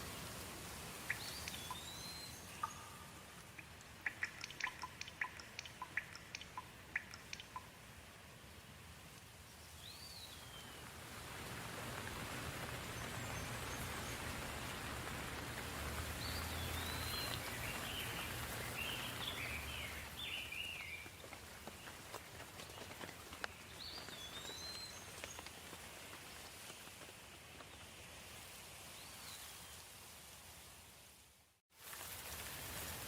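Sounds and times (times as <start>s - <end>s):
gentle rain falling: 0.0s - 33.0s
bird chirping: 1.1s - 7.8s, 16.2s - 21.1s.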